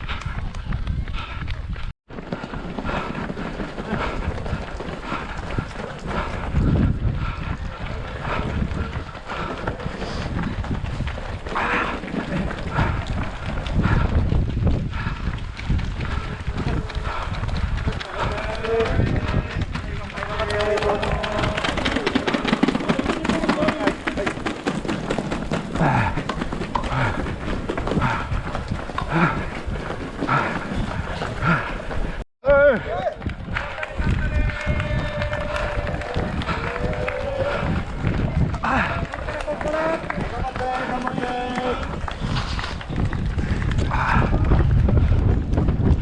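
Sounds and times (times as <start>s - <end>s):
runner breathing: 0.0s - 46.0s
wind buffeting microphone: 0.0s - 46.0s
running footfalls: 0.1s - 32.3s, 33.1s - 46.0s.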